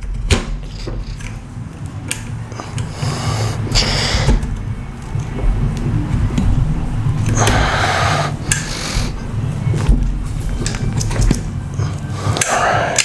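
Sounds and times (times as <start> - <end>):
metal gun parts clicking: 0.0 - 3.0, 9.7 - 12.6
low steady hum: 0.0 - 13.0
metal scraping rubs: 2.5 - 13.0.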